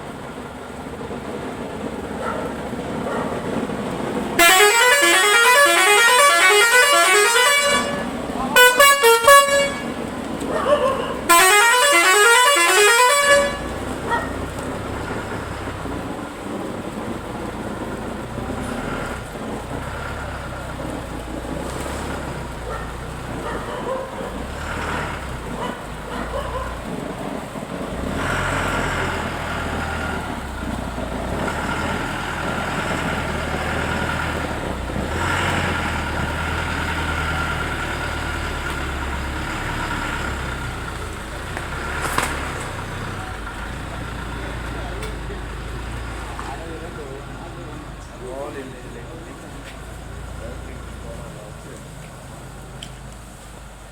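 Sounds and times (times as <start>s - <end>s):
motor vehicle running: 0.0s - 53.9s
multi-tone vehicle horn: 4.4s - 15.5s.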